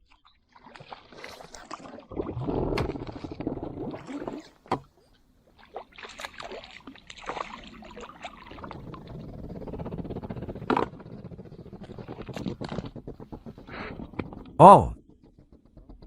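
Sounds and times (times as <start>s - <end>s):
water sloshing around boat: 0.0s - 9.7s.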